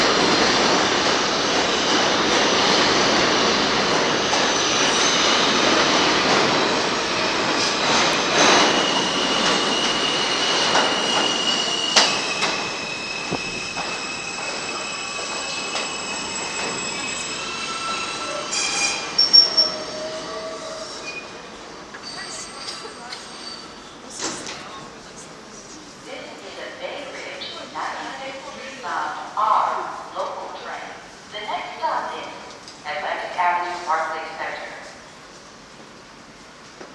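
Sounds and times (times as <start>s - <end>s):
subway train rolling on rails: 0.0s - 36.9s
high-pitched brake squeal: 7.4s - 21.4s, 22.0s - 24.0s.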